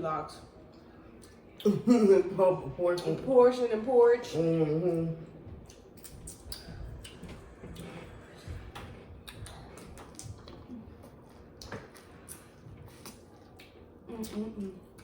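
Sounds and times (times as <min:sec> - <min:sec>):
chewing and smacking: 0:04.9 - 0:15.0.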